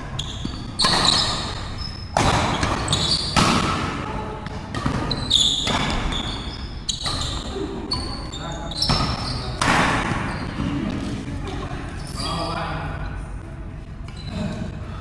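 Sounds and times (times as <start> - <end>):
shoes squeaking on court: 0.0 - 3.5, 4.4 - 11.2
racket hitting shuttlecock: 0.4 - 6.4.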